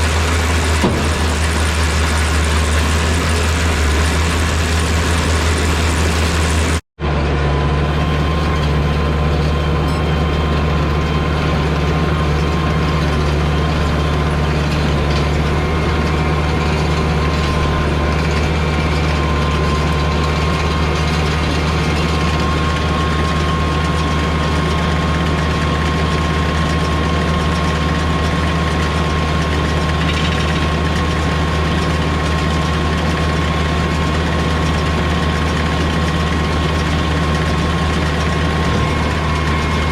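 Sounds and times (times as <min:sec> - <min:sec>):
tractor diesel engine under load: 0:00.0 - 0:39.9
thin steady whine: 0:33.2 - 0:39.9.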